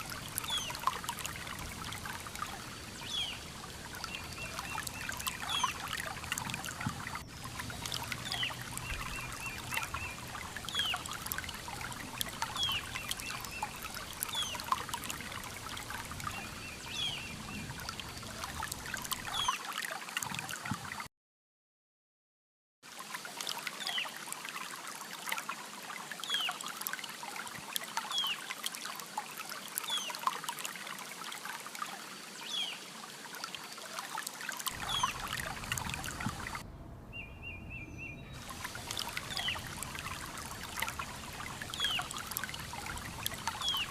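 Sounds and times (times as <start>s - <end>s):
river water flowing: 0.0s - 21.0s, 22.8s - 43.9s
birds calling: 34.7s - 43.9s.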